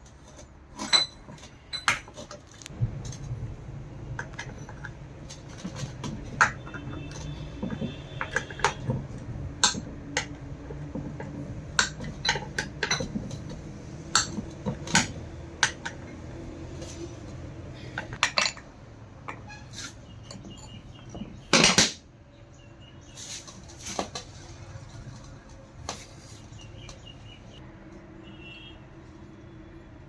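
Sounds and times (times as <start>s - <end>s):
metal tools clinking: 0.2s - 2.4s, 18.0s - 18.7s.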